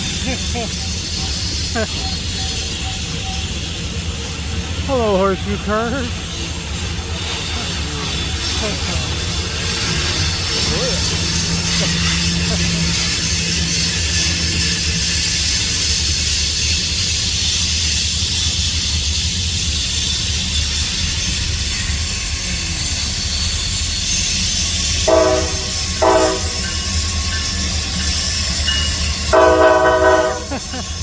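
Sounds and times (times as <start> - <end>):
freight train rumbling past: 0.0 - 31.0
locomotive air horn blasts: 25.0 - 26.7, 29.3 - 30.5.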